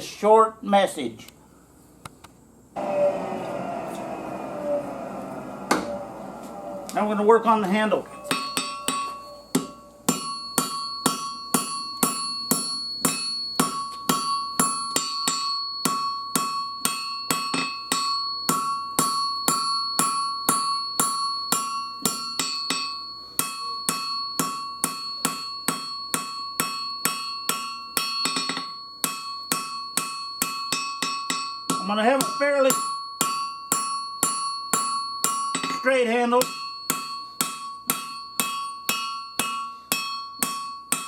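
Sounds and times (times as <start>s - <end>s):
anvil ringing: 2.8s - 41.0s
hammer striking steel on anvil: 6.6s - 41.0s.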